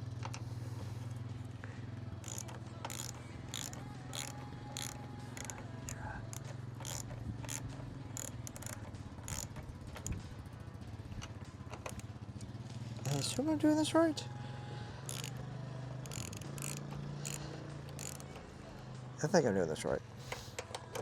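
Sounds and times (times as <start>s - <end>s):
hand tool clicking: 2.2s - 10.2s, 11.2s - 12.0s, 13.0s - 13.4s, 15.1s - 15.4s, 16.0s - 18.5s.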